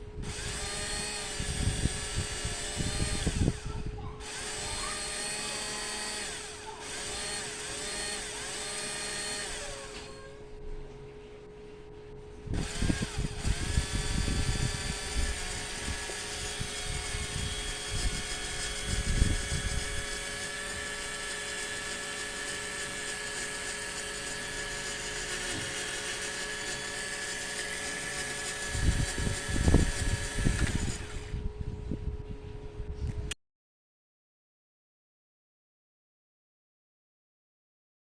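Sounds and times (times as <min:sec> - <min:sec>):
electric motor whine: 0:00.0 - 0:10.6, 0:12.4 - 0:32.1.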